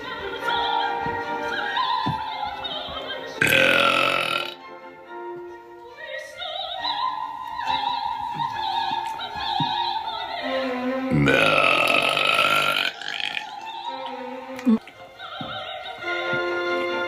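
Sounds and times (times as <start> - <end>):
operatic singing with vibrato: 0.0 - 4.8, 5.9 - 17.0
long loud burp: 3.4 - 4.6, 11.1 - 13.5.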